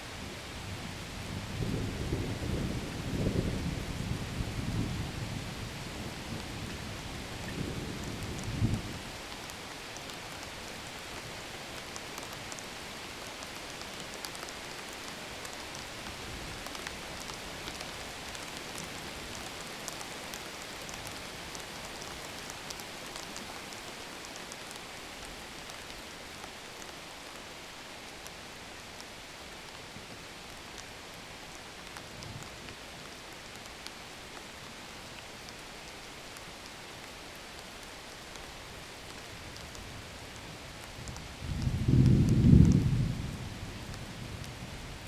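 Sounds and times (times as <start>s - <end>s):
steady rain falling: 0.0s - 45.0s
low thunder rumble: 0.8s - 9.0s, 41.3s - 45.0s
raindrop ticks: 7.4s - 27.4s, 29.0s - 44.6s.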